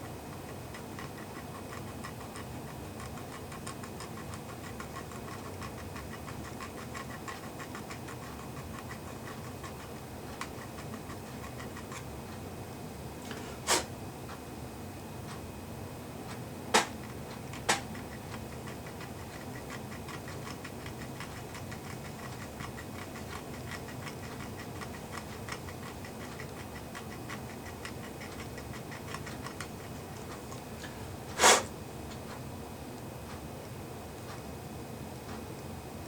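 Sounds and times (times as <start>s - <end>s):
wall clock ticking: 17.4s - 30.7s.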